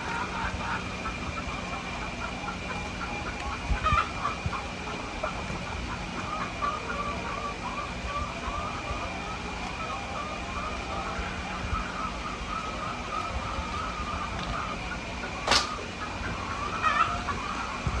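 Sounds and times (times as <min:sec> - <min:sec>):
sharp click: 0:15.5 - 0:15.9.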